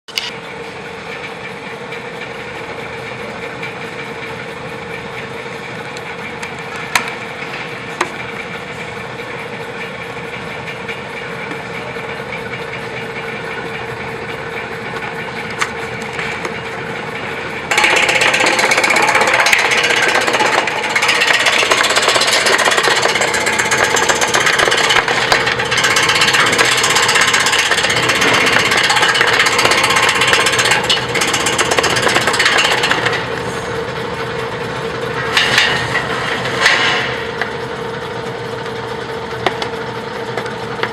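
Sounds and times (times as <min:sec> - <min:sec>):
slicing machine motor hum: 0:00.1 - 0:40.9
blades chopping rattle: 0:09.2 - 0:38.1.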